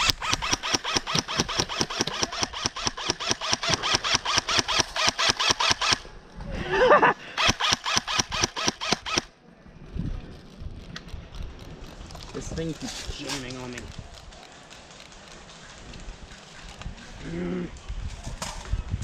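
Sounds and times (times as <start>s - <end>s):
airsoft gun rapid firing: 0.0s - 6.0s, 7.4s - 9.3s.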